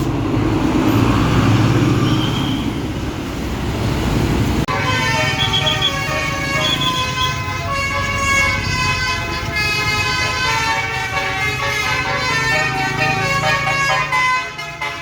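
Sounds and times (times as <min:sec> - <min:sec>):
bus horn melody: 0:04.7 - 0:15.0.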